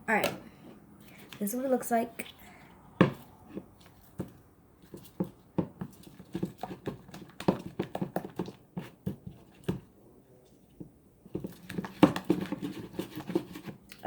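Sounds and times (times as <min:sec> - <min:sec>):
spatula stirring sticky slime: 0:03.0 - 0:09.9, 0:10.5 - 0:14.0.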